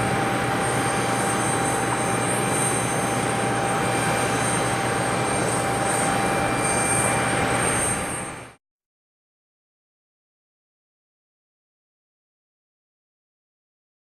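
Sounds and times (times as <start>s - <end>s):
light aircraft engine droning: 0.0s - 8.6s.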